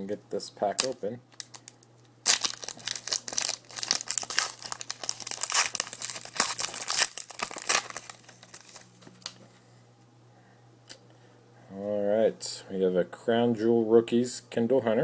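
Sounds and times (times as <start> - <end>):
foil pack tearing and crinkling: 0.8 - 9.4.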